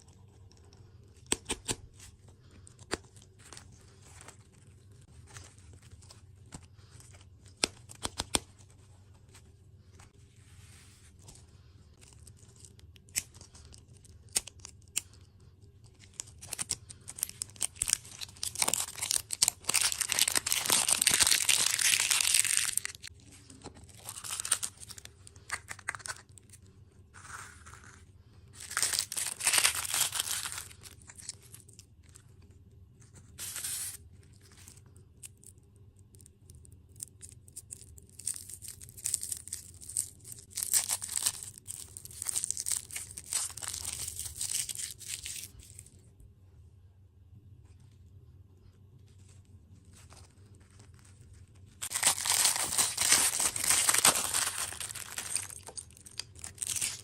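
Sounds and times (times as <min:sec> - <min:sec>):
wrapping ripping and rustling: 0:15.8 - 0:32.2, 0:33.2 - 0:35.5, 0:37.0 - 0:46.0, 0:49.0 - 0:57.0.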